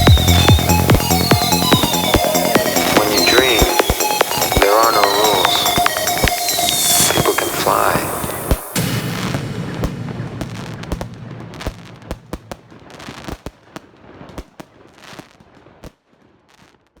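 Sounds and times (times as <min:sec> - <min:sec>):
distant fireworks bursts: 0:00.0 - 0:13.5
fireworks bangs: 0:00.0 - 0:14.4.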